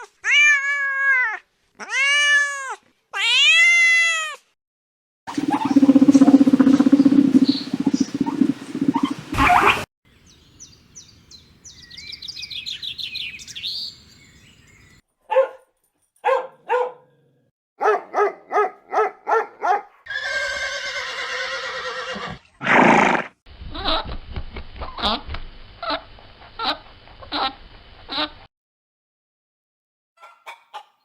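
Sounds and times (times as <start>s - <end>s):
high chirping animal calls: 5.3s - 9.8s
rough animal call: 5.3s - 9.9s, 20.1s - 23.3s.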